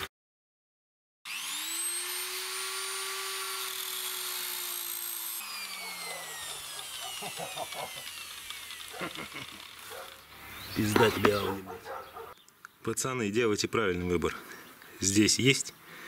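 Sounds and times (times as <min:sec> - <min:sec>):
angle grinder whining: 0:01.3 - 0:12.3.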